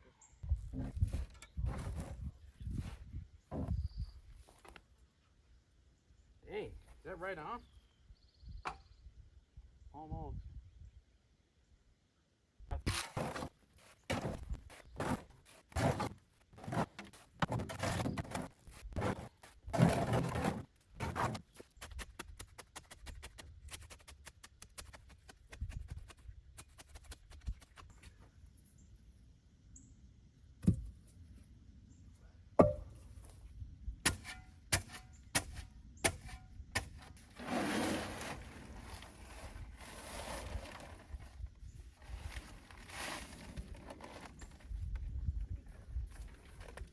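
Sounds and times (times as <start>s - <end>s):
flooring scraping: 37.2s - 41.2s.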